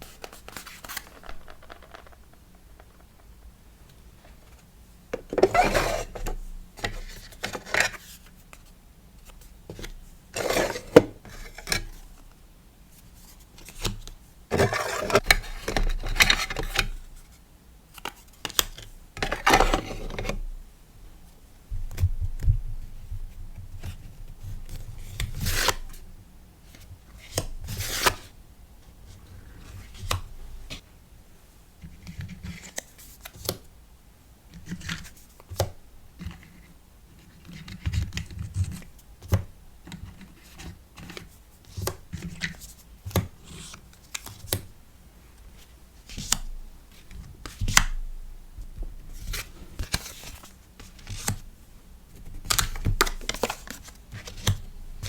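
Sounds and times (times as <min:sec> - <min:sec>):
paper and plastic rustling: 0:00.0 - 0:03.2.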